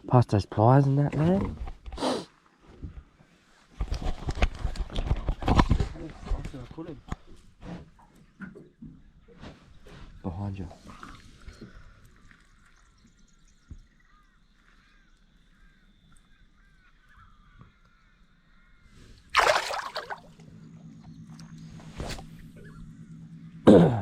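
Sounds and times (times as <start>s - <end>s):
steady low hum: 19.0s - 24.0s.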